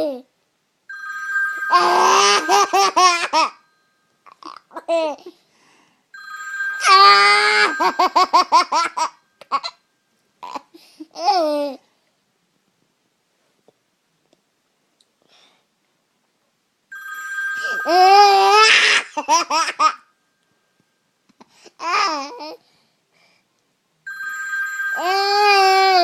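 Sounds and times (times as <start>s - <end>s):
phone ringtone: 0.9s - 4.0s, 6.2s - 9.4s, 16.9s - 19.1s, 24.1s - 26.0s
child squealing and laughing: 1.7s - 3.5s, 6.8s - 9.7s, 17.8s - 20.0s, 25.0s - 26.0s.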